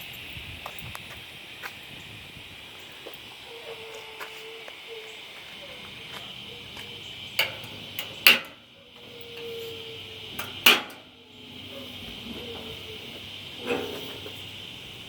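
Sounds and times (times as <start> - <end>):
latch clicking: 7.4 - 8.6, 10.4 - 11.1
metal lid clanking: 7.4 - 9.5, 10.4 - 11.1, 13.6 - 14.3.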